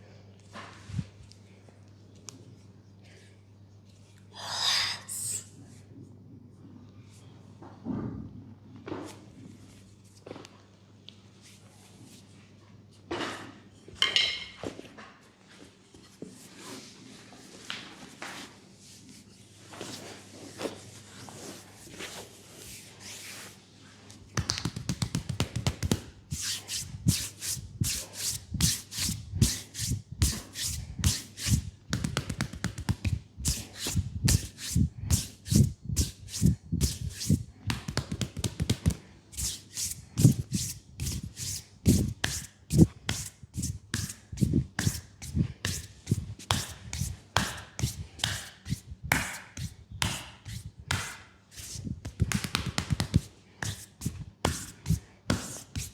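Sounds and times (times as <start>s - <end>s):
hands slapping legs: 24.3s - 41.3s, 41.9s - 55.9s.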